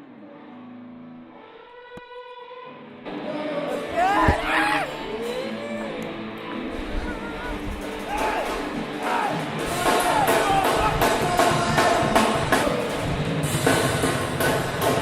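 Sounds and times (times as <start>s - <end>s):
drum kit playing a steady beat: 7.8s - 15.0s.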